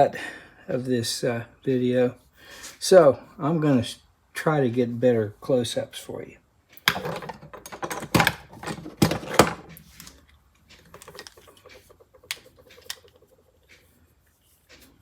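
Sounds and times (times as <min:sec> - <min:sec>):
tools clicking and rattling: 0:06.8 - 0:13.9.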